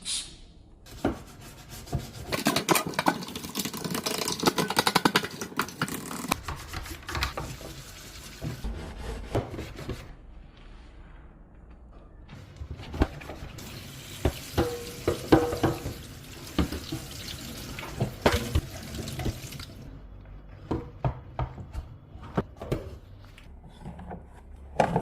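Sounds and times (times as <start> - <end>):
tap water running into sink: 13.6 - 19.8.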